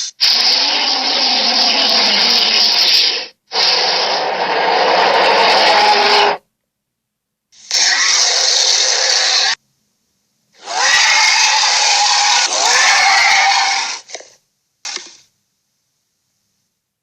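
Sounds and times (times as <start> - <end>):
creature growl-hisses: 0.2 - 6.4.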